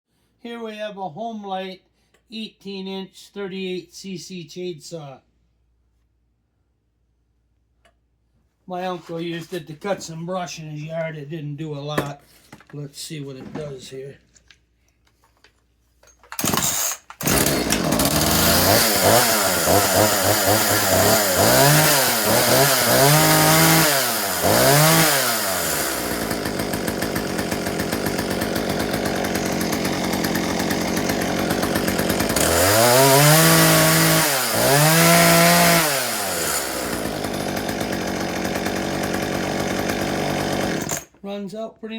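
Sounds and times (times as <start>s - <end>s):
chainsaw idling: 16.3s - 41.1s
chainsaw starting and revving: 16.3s - 41.2s.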